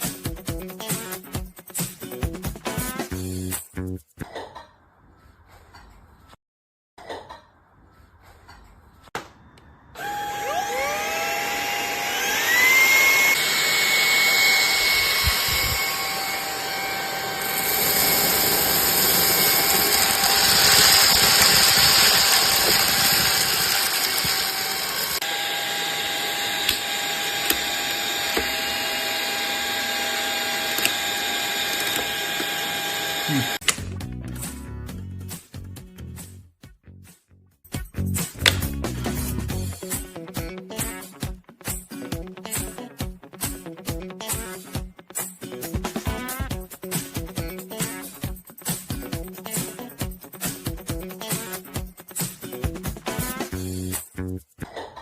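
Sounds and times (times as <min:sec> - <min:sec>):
handheld vacuum motor whine: 0:10.0 - 0:33.7.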